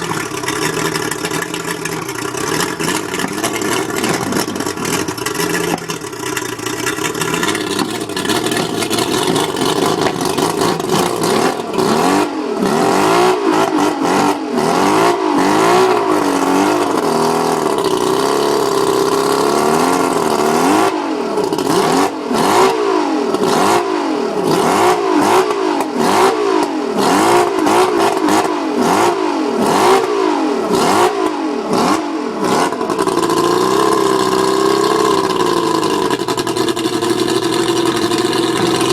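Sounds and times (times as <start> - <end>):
outboard motor running rough: 0.0 - 38.9.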